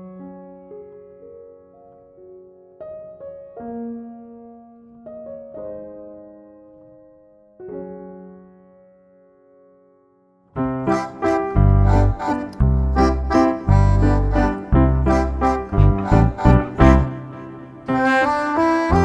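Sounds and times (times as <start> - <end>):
soft piano chords: 0.0 - 19.0
loud piano passage with deep bass: 10.5 - 19.0.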